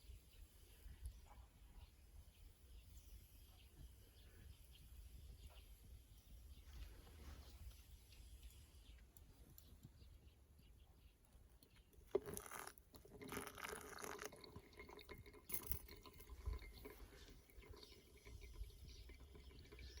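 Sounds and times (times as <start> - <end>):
water being poured: 12.0 - 20.0.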